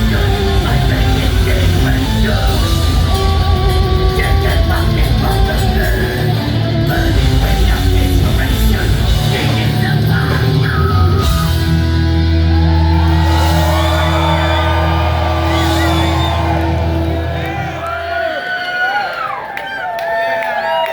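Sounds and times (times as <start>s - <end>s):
distorted electric guitar: 0.0s - 17.8s
person shouting singing: 0.0s - 17.8s
drums: 0.0s - 18.1s.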